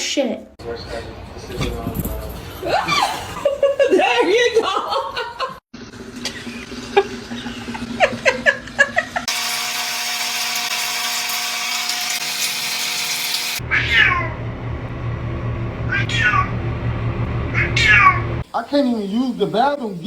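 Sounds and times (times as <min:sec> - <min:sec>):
cat meowing: 0:13.6 - 0:14.4, 0:15.9 - 0:16.5, 0:17.6 - 0:18.4.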